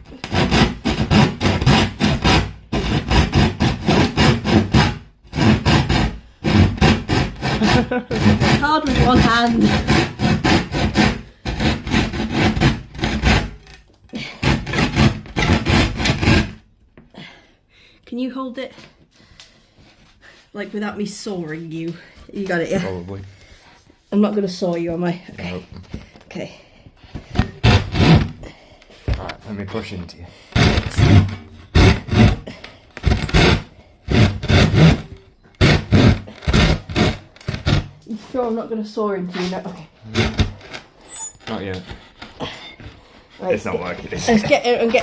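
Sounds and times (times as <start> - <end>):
hand saw cutting wood: 0.0 - 16.7, 19.8 - 23.1, 27.1 - 28.5, 30.5 - 45.0.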